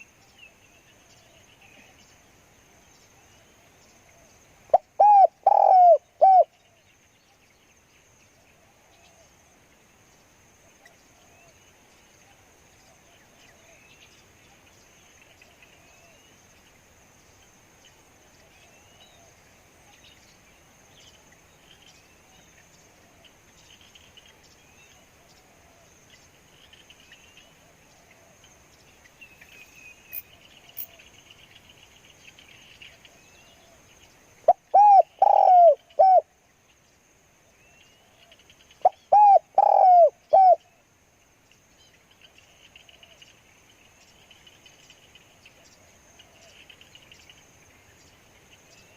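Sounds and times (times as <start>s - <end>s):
faint insects humming: 0.0s - 48.9s
dove cooing: 4.7s - 6.5s, 34.5s - 36.3s, 38.8s - 40.6s.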